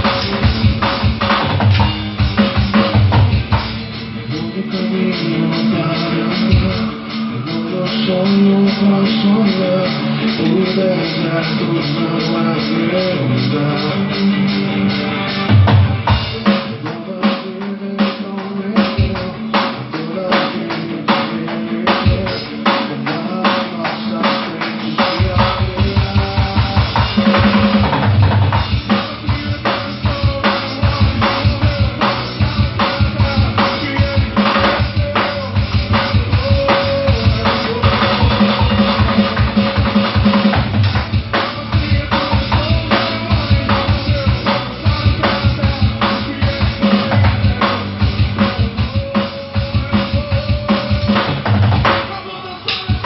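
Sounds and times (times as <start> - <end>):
bass drum hitting hard: 0.0 - 4.0, 15.5 - 16.4, 25.2 - 49.1
drum kit playing: 0.0 - 53.0
recorded gospel song: 2.5 - 53.0.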